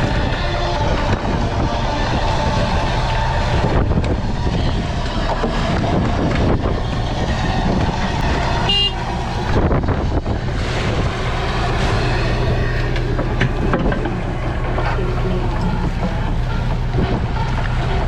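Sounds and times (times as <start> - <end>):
boat engine humming: 0.0 - 18.0
machinery knocks: 9.0 - 18.0.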